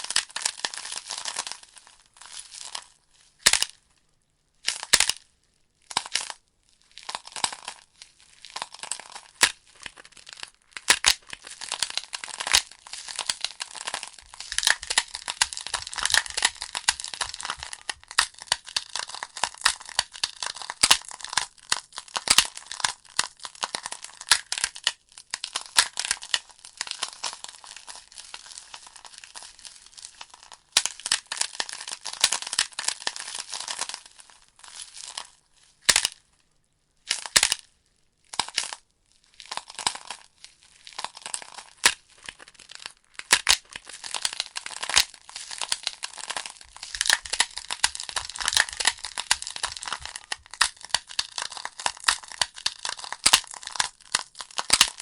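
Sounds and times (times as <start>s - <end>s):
firewood crackling and popping: 9.9s - 27.2s, 43.2s - 55.0s.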